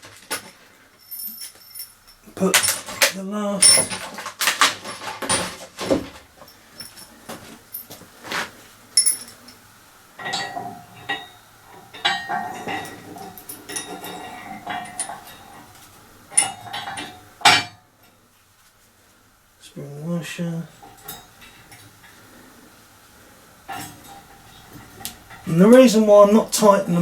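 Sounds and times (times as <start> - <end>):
metal parts clinking: 0.1 - 5.7, 9.0 - 9.6, 12.0 - 15.6.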